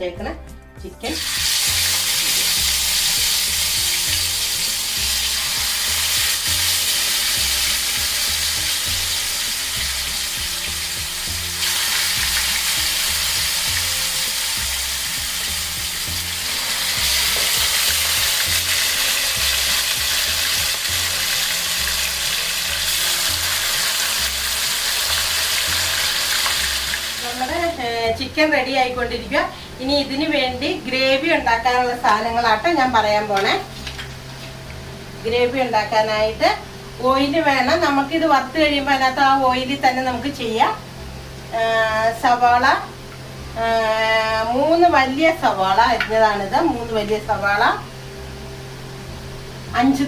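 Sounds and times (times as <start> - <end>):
chicken frying in oil: 1.2 - 27.8.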